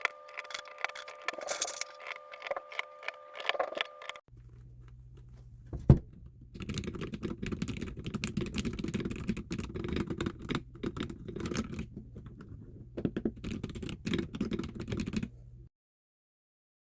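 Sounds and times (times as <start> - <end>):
keyboard typing: 0.0 - 4.3, 6.6 - 15.3.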